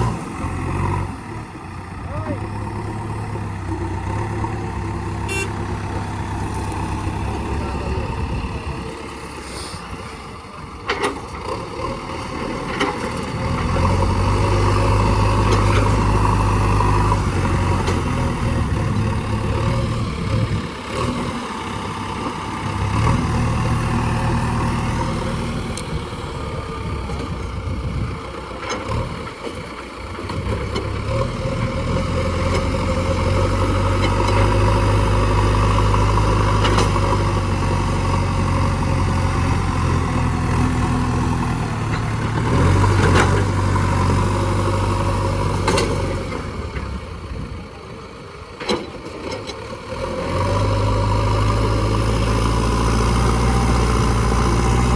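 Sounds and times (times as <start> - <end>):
heavy diesel engine running: 0.0 - 54.9.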